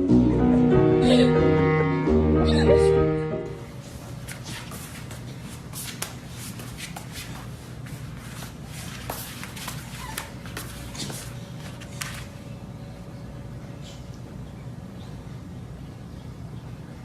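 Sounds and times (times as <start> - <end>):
steady low hum: 0.0 - 17.0
shuffling and scuffing: 3.7 - 12.4.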